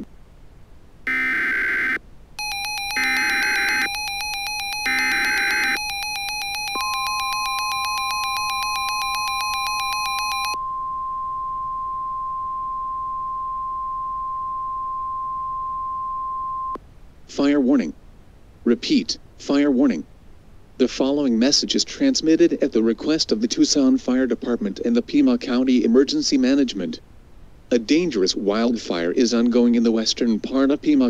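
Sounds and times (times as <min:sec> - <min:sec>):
pulsing buzzy electronic beep: 0:01.1 - 0:10.6
screeching digital data tones: 0:01.1 - 0:10.6
steady warning alarm tone: 0:01.1 - 0:16.8.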